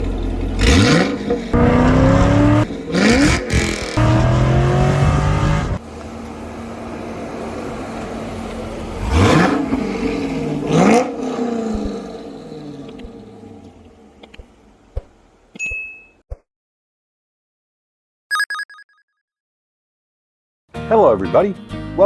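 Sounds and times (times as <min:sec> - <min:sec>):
car engine revving: 0:00.0 - 0:15.5.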